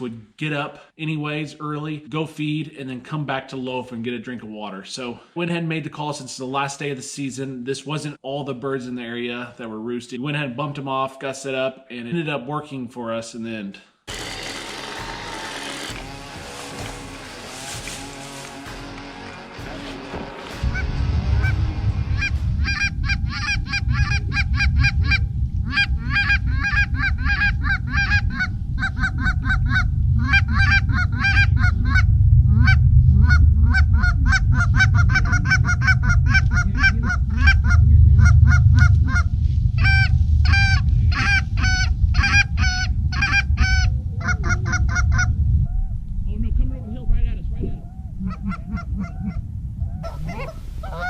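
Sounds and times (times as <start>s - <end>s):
heavy low rumble: 14.1s - 51.0s
geese honking: 15.1s - 45.3s, 50.0s - 51.0s.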